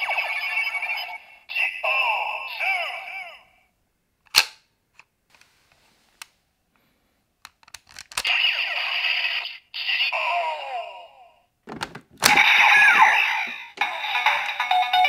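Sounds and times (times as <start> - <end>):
toy electronic sound effects: 0.0 - 3.4, 8.2 - 10.7, 12.2 - 15.0
sharp plastic clicks: 4.3 - 5.1, 7.4 - 8.3.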